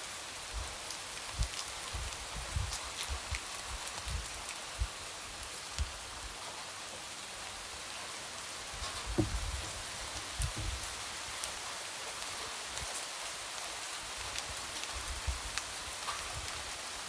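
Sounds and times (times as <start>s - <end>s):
light rain pattering: 0.0s - 17.0s
raindrops tapping: 8.8s - 11.6s
soft low thuds: 9.1s - 10.9s.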